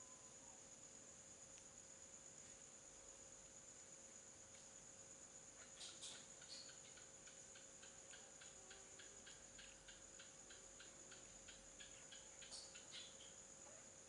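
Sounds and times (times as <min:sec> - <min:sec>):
faint rapid ticking: 0:05.6 - 0:13.4.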